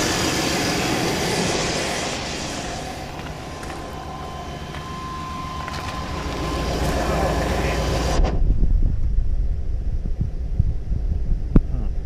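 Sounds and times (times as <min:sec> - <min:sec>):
pickup truck engine idling: 0:00.0 - 0:08.2.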